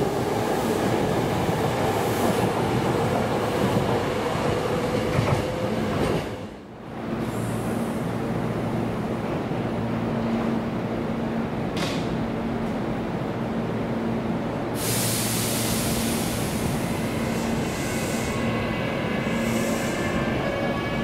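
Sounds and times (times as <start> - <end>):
air hiss: 14.8 - 18.6, 19.2 - 20.2.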